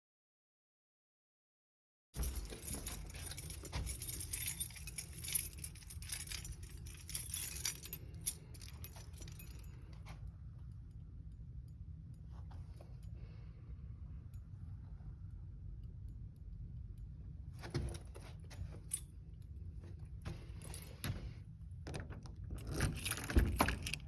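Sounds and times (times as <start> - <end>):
keys jangling: 2.2 - 10.3, 17.6 - 19.6, 20.2 - 24.0
key clicking in deadbolt lock: 21.9 - 24.0.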